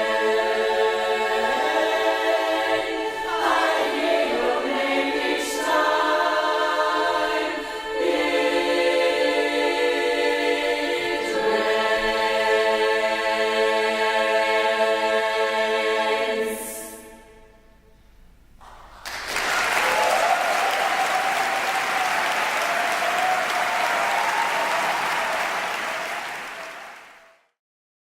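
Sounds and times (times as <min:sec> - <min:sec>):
women's chorus singing a cappella: 0:00.0 - 0:17.6
audience applause and cheering: 0:18.6 - 0:27.5.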